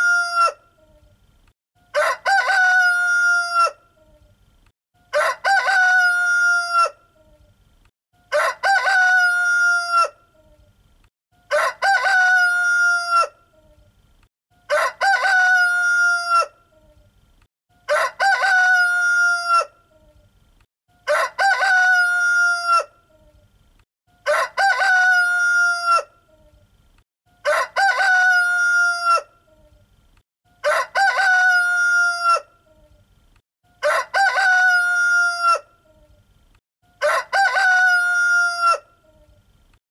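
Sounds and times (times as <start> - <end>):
rooster crowing: 1.9 - 3.8, 5.1 - 7.0, 8.2 - 10.2, 11.5 - 13.4, 14.7 - 16.6, 17.8 - 19.8, 21.0 - 22.9, 24.2 - 26.1, 27.4 - 29.3, 30.6 - 32.5, 33.8 - 35.7, 37.0 - 39.0.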